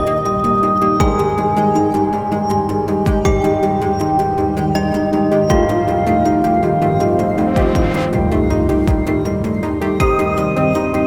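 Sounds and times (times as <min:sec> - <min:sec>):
sustained synth tones: 0:06.5 - 0:11.0
ticking beat: 0:06.7 - 0:11.0
low drum hits: 0:07.3 - 0:10.4.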